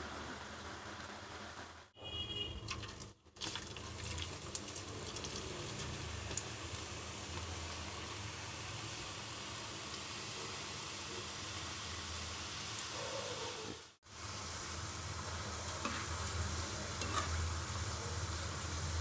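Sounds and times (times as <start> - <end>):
water running from a tap: 2.6 - 8.3.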